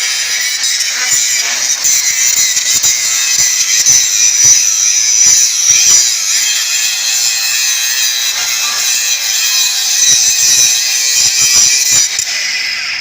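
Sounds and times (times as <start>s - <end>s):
angle grinder whining: 0.0s - 13.0s
grinder grating on steel: 0.0s - 13.0s.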